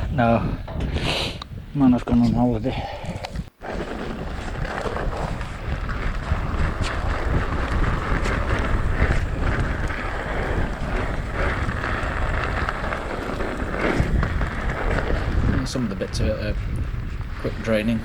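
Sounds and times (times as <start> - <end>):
wind buffeting microphone: 0.0 - 18.0
tyres rolling on stony trail: 1.9 - 18.0
bike knocks and rattles: 3.7 - 18.0.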